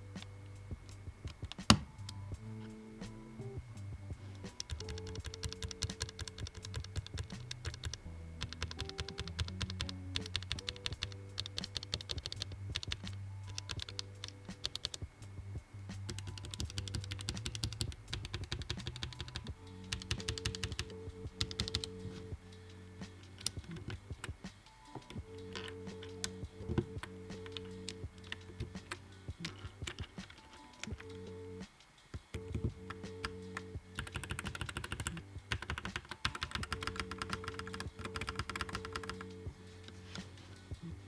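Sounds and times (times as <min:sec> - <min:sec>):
background music: 0:00.0 - 0:41.0
mechanical keyboard typing: 0:04.5 - 0:15.0, 0:16.1 - 0:22.0, 0:23.4 - 0:24.4, 0:25.4 - 0:31.2, 0:32.3 - 0:39.3.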